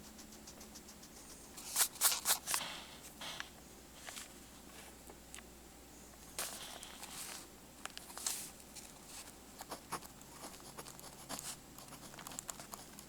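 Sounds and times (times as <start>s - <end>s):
pencil scratching on paper: 0.0s - 3.4s.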